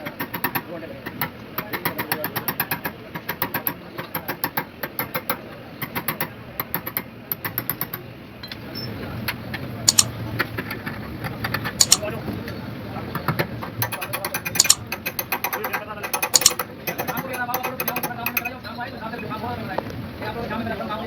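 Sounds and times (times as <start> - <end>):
rapid sharp metal tapping: 9.9 - 10.2, 11.8 - 12.1, 13.6 - 18.6.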